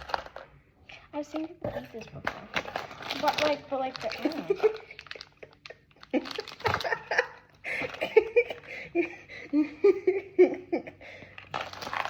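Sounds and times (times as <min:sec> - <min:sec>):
girls giggling and laughing: 0:04.3 - 0:11.2.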